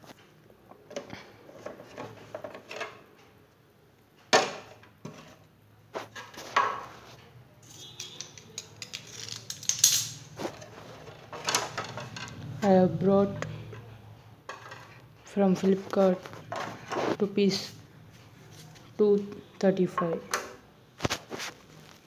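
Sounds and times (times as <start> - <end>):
plastic trays clattering: 7.6 - 12.4.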